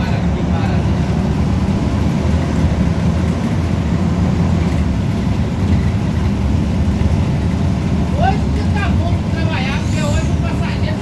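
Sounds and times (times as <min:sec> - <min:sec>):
bus engine droning: 0:00.0 - 0:11.0
road rumble: 0:00.0 - 0:11.0.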